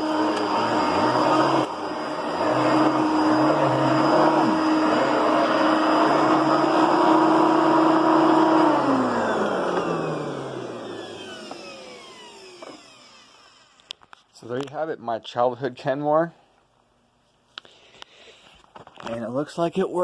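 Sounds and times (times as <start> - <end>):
vacuum cleaner motor running: 0.0 - 13.9.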